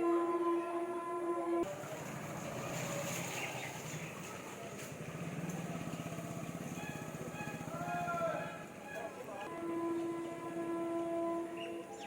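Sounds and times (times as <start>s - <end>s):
vehicle engine running: 1.6s - 9.5s.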